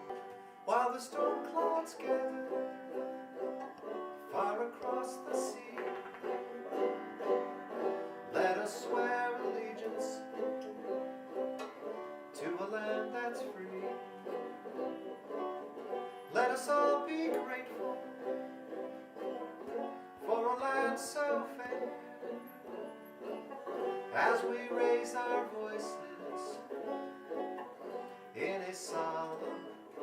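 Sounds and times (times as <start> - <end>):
banjo music: 0.0 - 30.0.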